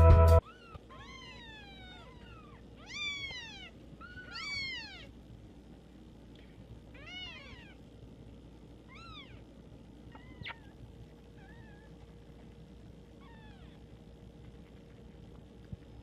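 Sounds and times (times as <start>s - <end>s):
cat meowing: 0.4s - 5.1s.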